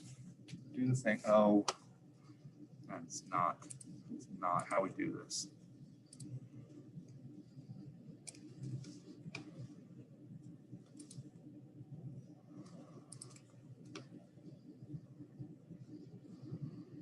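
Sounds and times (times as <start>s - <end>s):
low room hum: 0.0s - 17.0s
computer keyboard clicks: 10.9s - 11.3s, 12.6s - 14.1s.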